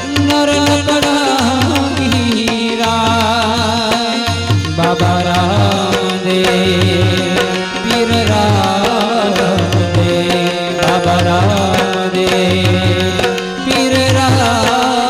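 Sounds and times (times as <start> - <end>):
hand drum rhythm: 0.0 - 15.0
harmonium melody: 0.0 - 15.0.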